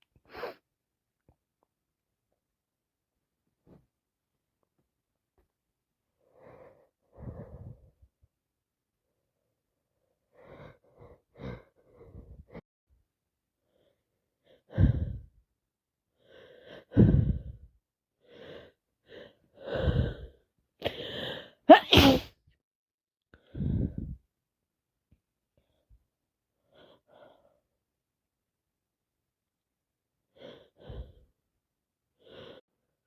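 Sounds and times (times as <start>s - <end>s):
woman gasping in-breaths: 14.7s - 15.3s, 16.7s - 17.7s, 19.6s - 22.2s, 23.5s - 24.2s
woman sneezing: 21.7s - 22.4s.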